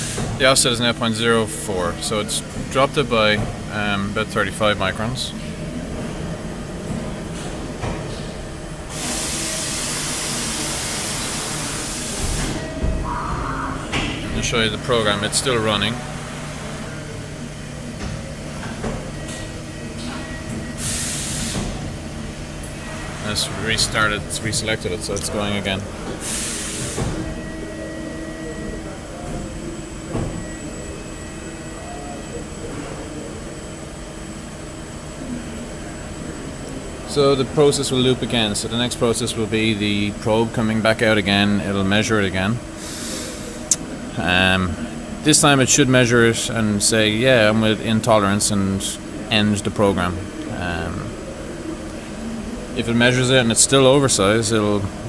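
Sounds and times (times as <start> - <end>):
machine running with low hum: 0.0 - 55.0
coolant spray hiss: 8.9 - 12.5, 20.8 - 21.7, 26.2 - 27.0.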